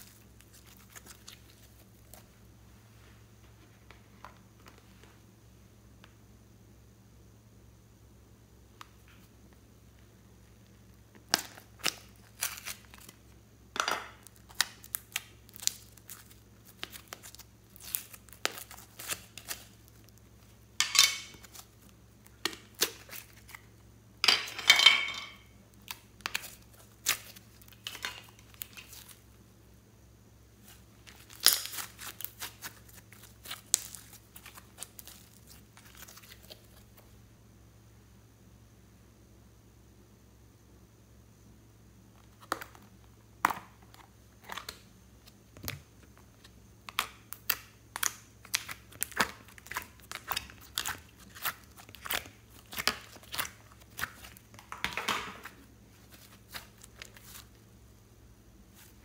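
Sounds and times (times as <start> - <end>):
slime squelching: 0.0 - 2.3, 21.3 - 23.7, 30.6 - 37.0, 46.8 - 57.6
slime crackling and popping: 11.2 - 13.2, 14.1 - 23.8, 25.7 - 29.2, 30.6 - 36.9, 46.8 - 57.6.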